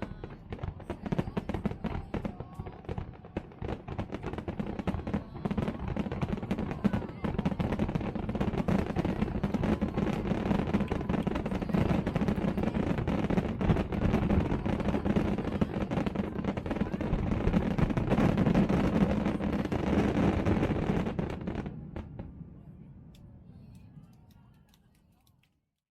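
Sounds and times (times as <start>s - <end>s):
fireworks cracks and bangs: 0.0s - 22.5s.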